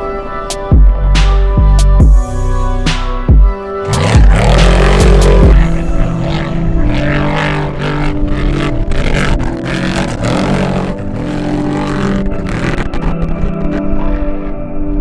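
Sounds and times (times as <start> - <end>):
race truck engine revving: 3.8 - 14.7.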